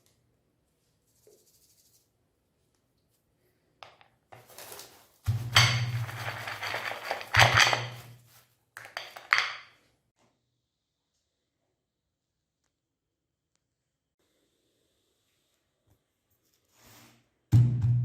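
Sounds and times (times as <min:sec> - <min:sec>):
metal kitchenware clattering: 0:05.3 - 0:08.2, 0:08.9 - 0:09.8.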